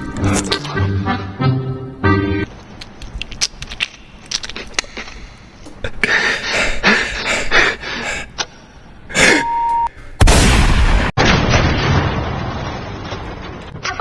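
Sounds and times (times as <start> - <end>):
beatboxer mouth clicks: 2.9 - 5.8.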